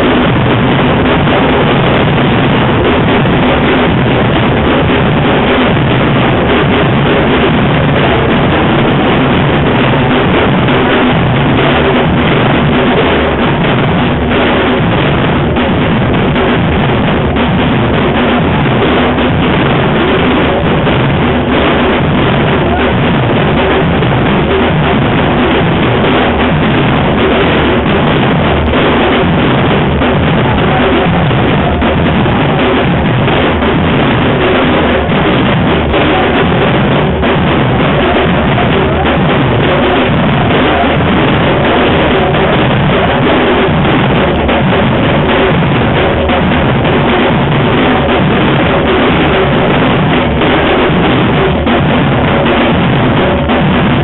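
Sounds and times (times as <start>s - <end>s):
street percussion band drumming: 0.0s - 54.0s.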